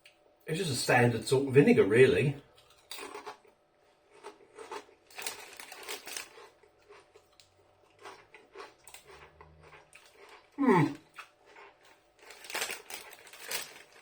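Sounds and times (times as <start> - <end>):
crisps being chewed: 2.6 - 14.0.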